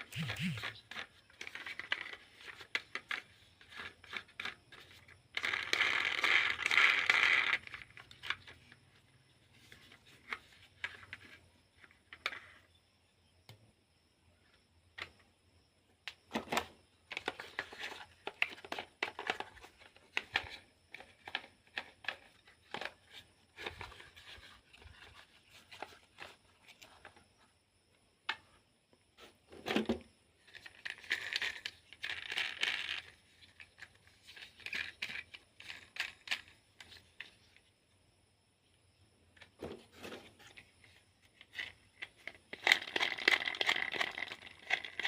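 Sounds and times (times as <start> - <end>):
plastic objects clicking: 0.1 - 8.8, 16.1 - 27.2, 29.5 - 37.4, 39.4 - 45.0.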